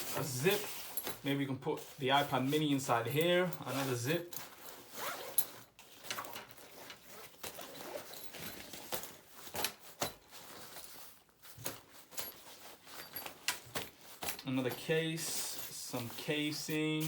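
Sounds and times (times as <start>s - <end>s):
fabric rustling: 0.0s - 17.0s
zippers pulled: 3.5s - 10.2s.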